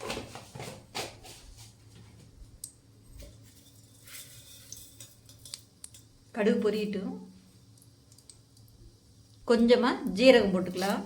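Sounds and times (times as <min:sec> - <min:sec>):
seeds crackling in hot oil: 0:02.5 - 0:11.0.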